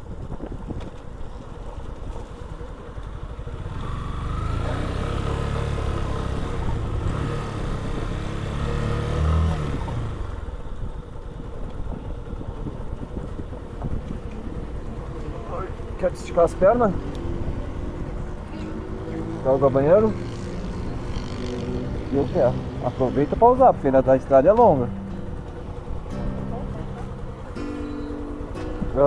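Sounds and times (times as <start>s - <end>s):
vehicle engine passing: 3.4s - 10.7s, 13.2s - 29.0s.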